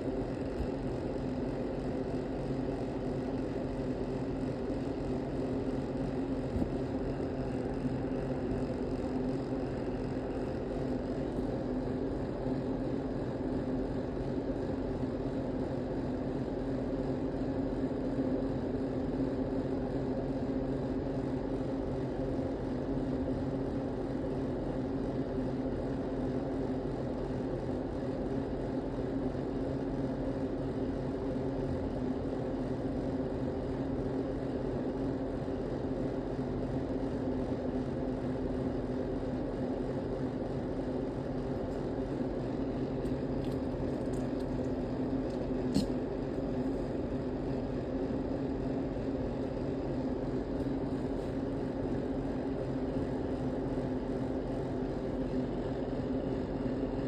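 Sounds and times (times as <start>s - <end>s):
steady mechanical hum: 0.0s - 57.0s.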